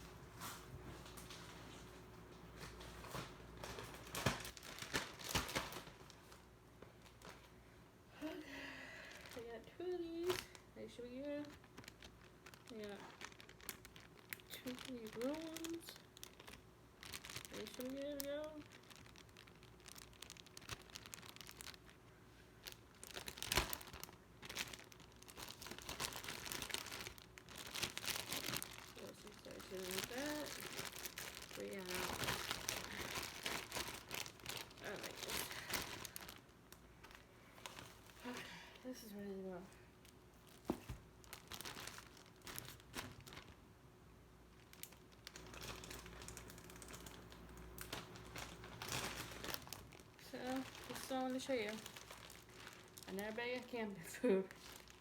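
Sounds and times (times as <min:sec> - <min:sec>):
plastic bag crinkling: 0:00.1 - 0:07.6, 0:08.2 - 0:43.7, 0:44.4 - 0:55.0.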